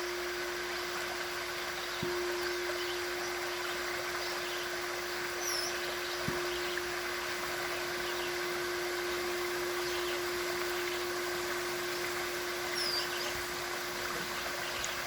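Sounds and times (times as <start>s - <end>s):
flowing stream: 0.0s - 15.0s
singing bowl tone: 0.0s - 15.0s
bird chirping: 1.6s - 4.8s, 5.4s - 6.9s, 7.7s - 11.2s, 12.7s - 13.6s, 14.2s - 15.0s.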